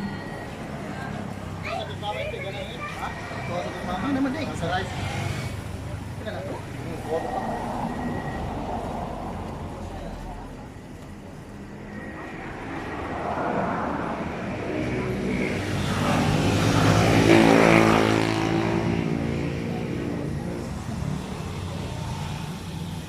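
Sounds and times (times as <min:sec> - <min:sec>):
vehicle engine passing by: 0:11.7 - 0:22.9.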